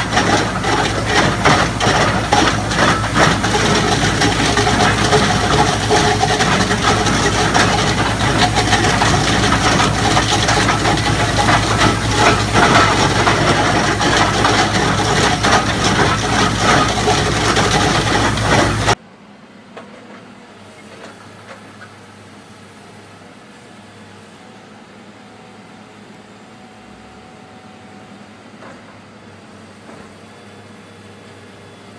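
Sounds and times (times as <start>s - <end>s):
heavy machinery clattering: 0.0s - 19.0s
engine hum: 0.0s - 31.9s.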